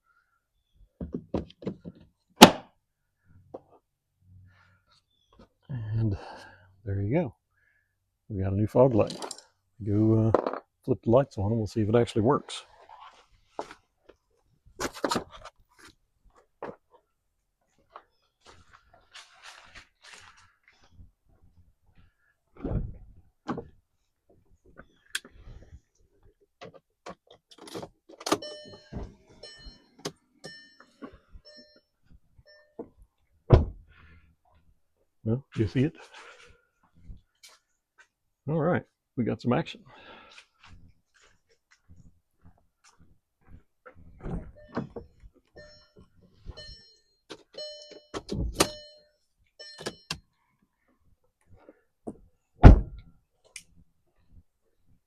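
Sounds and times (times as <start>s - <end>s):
short electronic chime: 46.6s - 50.1s
loud thump: 52.6s - 53.0s.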